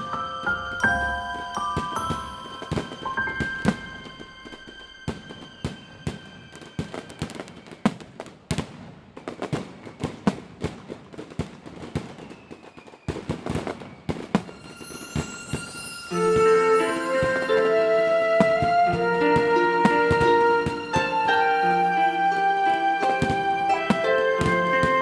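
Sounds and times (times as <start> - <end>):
show music: 0.0 - 5.0, 14.5 - 25.0
fireworks popping and crackling: 1.6 - 17.5.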